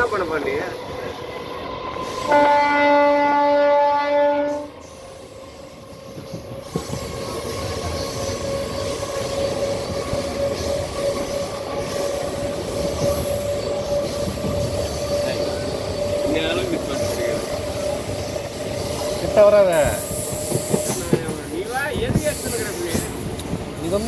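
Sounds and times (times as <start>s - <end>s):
train running noise: 0.0s - 24.0s
wheels squealing on rails: 0.0s - 24.0s
train horn: 2.2s - 4.8s.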